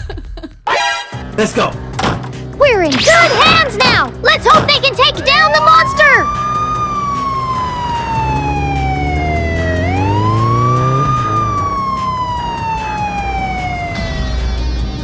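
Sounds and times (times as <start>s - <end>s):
police siren wailing: 3.0s - 14.7s
vehicle engine drone: 5.1s - 15.0s.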